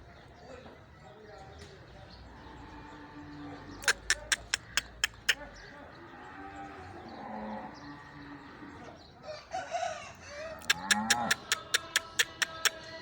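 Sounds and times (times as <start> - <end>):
farm animals calling: 0.2 - 13.0
sharp clicks: 3.8 - 5.4, 10.6 - 12.9.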